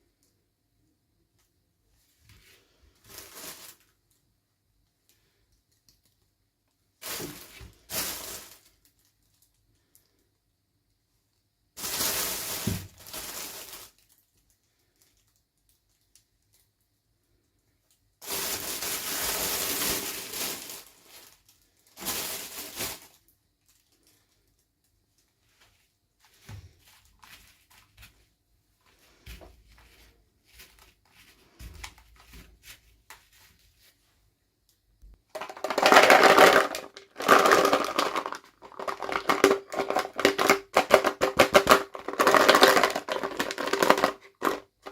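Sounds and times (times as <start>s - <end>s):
plastic and paper crinkling: 2.3s - 4.2s, 7.0s - 10.0s, 11.8s - 16.8s, 18.2s - 34.1s, 35.3s - 44.9s.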